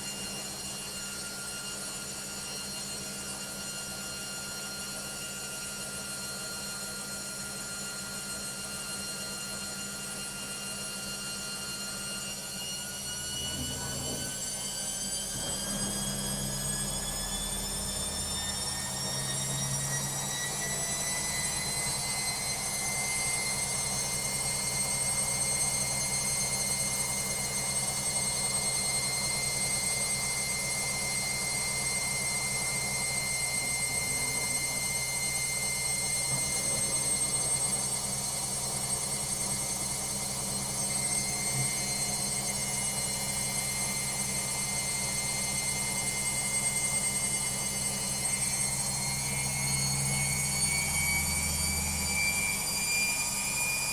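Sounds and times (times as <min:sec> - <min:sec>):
washing machine spinning: 0:11.8 - 0:53.9.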